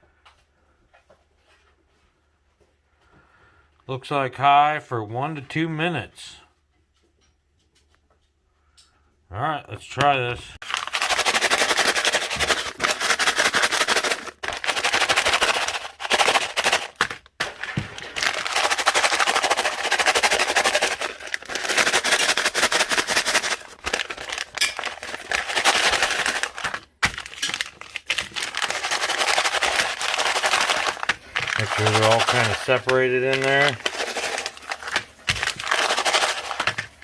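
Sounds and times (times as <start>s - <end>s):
snack bag crinkling: 10.6s - 37.0s.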